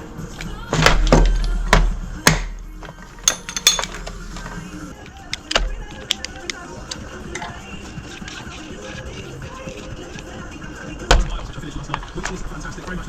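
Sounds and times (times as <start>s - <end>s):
music on a radio: 0.0s - 13.0s
sharp knocks and clatters: 2.9s - 4.6s.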